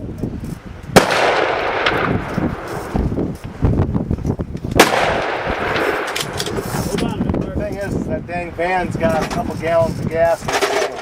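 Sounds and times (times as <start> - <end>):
loud close gunshot echoing: 1.0 - 3.0, 4.8 - 6.6
gunshots: 1.0 - 3.1, 4.8 - 6.9.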